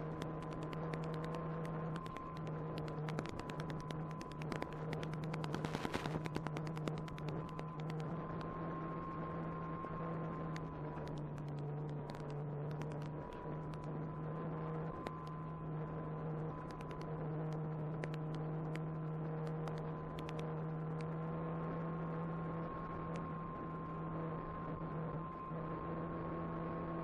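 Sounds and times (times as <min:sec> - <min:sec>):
crackling clicks: 0:00.0 - 0:09.2, 0:09.8 - 0:21.3
steady hum: 0:00.0 - 0:27.0.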